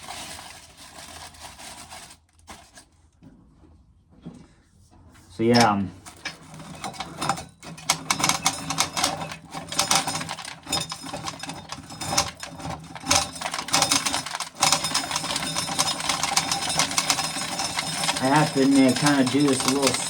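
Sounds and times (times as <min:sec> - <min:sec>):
corn sheller clattering: 0:05.5 - 0:20.0.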